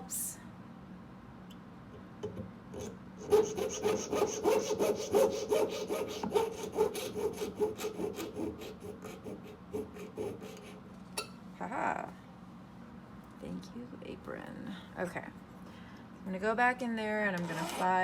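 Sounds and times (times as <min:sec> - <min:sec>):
saw cutting metal tube: 0:03.2 - 0:10.8, 0:17.4 - 0:18.0.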